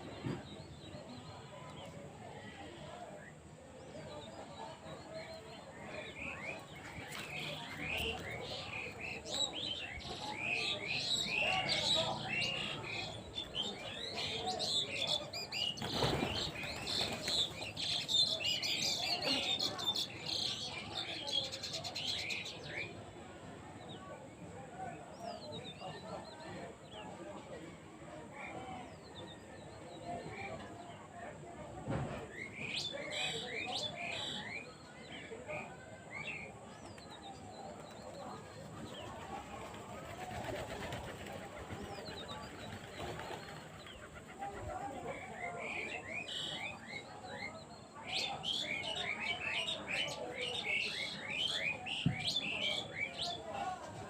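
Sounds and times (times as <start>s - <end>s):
small birds chirping: 0.0s - 23.1s, 32.3s - 54.0s
wings flapping: 15.7s - 17.7s, 39.0s - 44.4s.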